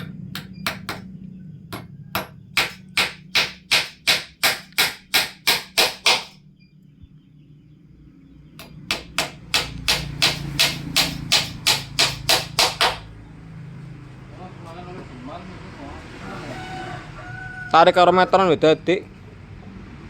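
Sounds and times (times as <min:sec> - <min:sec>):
hammer driving nail into wood: 0:00.0 - 0:01.0, 0:01.8 - 0:06.4, 0:08.6 - 0:13.0.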